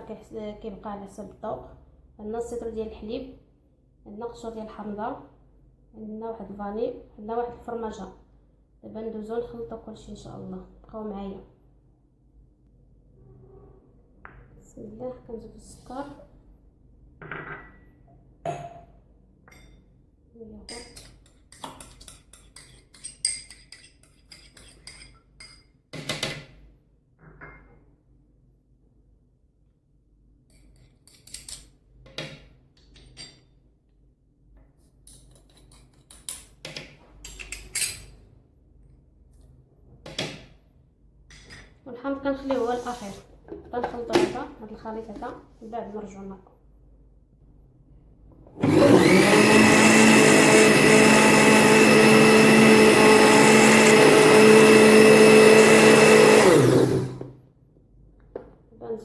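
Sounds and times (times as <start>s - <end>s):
utensils and dishes clinking: 20.7s - 25.7s, 37.2s - 38.2s
electric blender running: 48.6s - 57.3s.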